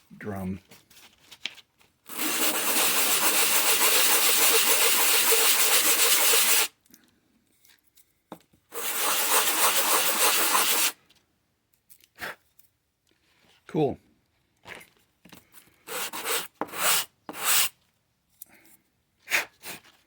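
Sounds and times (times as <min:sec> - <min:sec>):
sanding a tin drum surface: 0:02.1 - 0:06.7, 0:08.7 - 0:11.0, 0:15.9 - 0:17.7.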